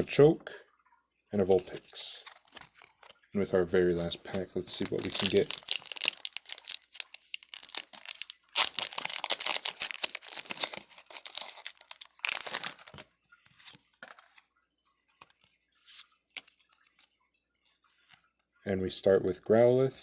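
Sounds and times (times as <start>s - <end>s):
foil wrapper crinkling and tearing: 2.2s - 3.3s, 4.1s - 14.2s.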